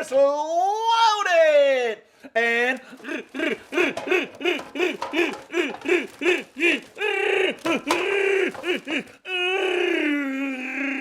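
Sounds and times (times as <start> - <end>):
man hooting in falsetto: 6.0 - 11.0.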